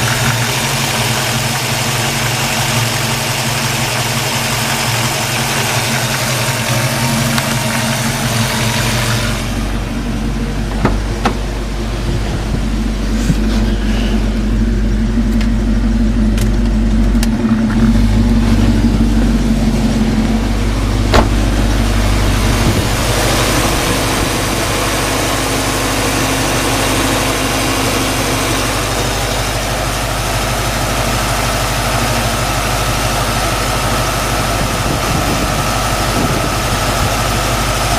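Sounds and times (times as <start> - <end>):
engine knocking: 0.0 - 9.6, 21.0 - 37.9
car engine idling: 0.0 - 37.9.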